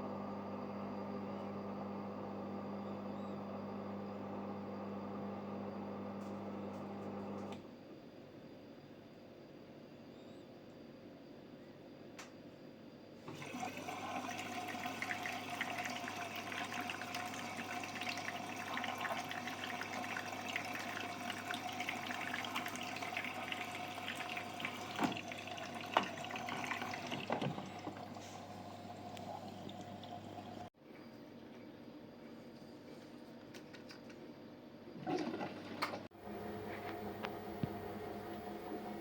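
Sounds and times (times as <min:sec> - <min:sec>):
water rushing into washing machine: 0:13.3 - 0:30.7, 0:35.0 - 0:39.0.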